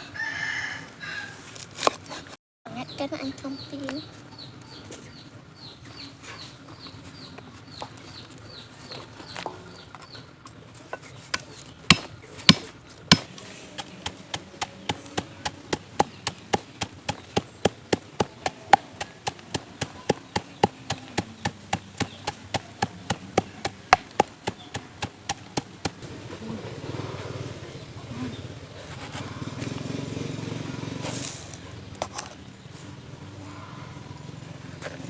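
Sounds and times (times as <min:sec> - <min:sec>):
food being struck: 0:11.9 - 0:26.0.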